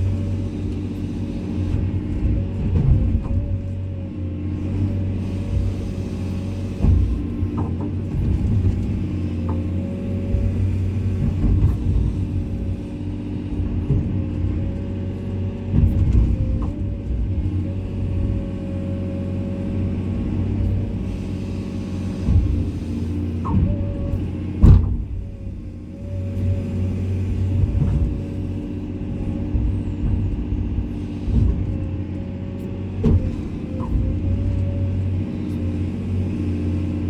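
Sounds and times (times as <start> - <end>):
excavator diesel engine running: 0.0 - 37.0
knocks and clunks: 6.5 - 12.8, 13.5 - 14.8, 15.6 - 18.5, 22.0 - 36.0.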